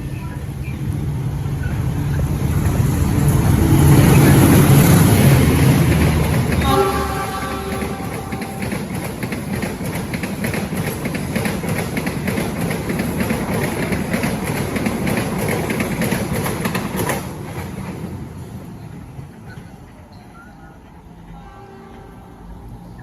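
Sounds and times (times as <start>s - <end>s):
train rumble: 0.0s - 23.0s
train wheels clattering over joints: 2.7s - 18.0s.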